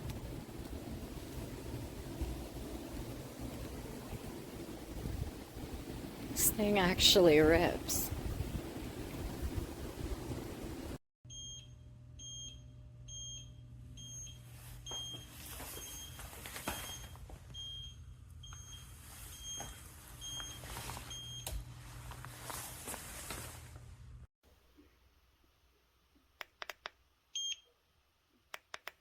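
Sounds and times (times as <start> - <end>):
low hum: 0.0 - 15.2
turn signal beeping: 16.8 - 21.6.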